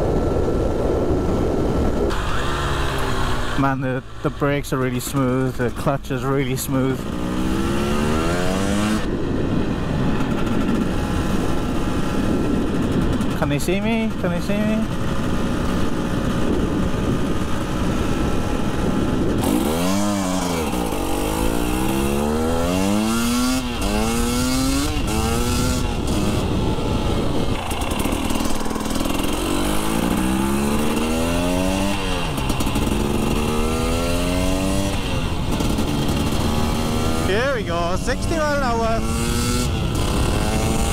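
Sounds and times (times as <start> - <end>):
motorcycle engine accelerating: 0.0 - 40.9
wind noise: 0.0 - 40.9.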